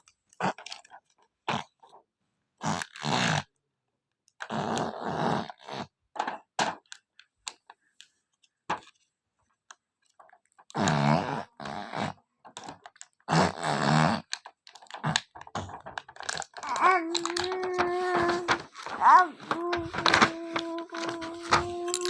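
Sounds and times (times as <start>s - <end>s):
small child grunting: 16.5s - 22.0s.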